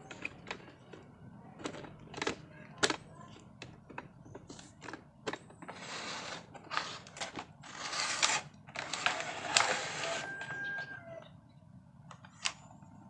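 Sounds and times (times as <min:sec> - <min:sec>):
rubbing or scraping: 0:05.6 - 0:10.7.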